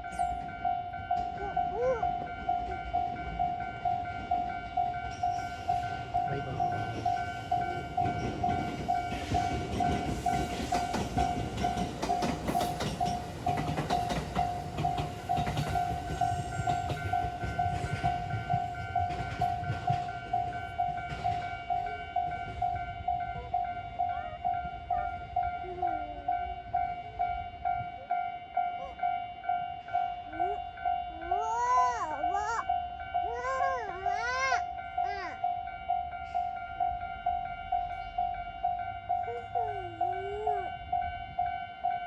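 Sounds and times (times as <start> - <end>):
train wheels over rail joints: 0.0 - 28.9.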